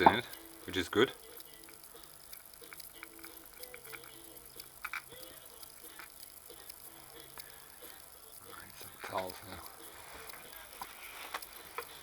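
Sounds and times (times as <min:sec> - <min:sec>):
metal parts clicking and knocking: 0:02.6 - 0:06.2.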